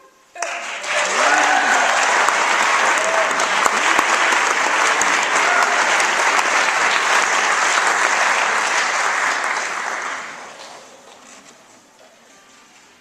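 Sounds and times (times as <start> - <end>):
audience applauding: 0.4 - 11.0.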